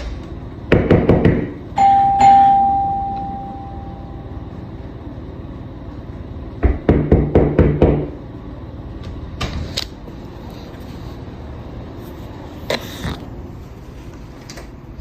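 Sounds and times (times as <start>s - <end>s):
loud knocks on door: 6.6s - 8.1s.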